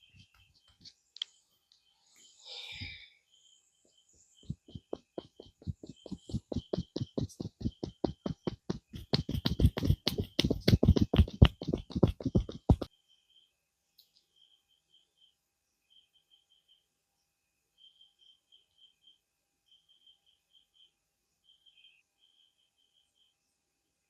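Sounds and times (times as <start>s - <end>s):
hands tapping and slapping body: 4.4s - 12.9s.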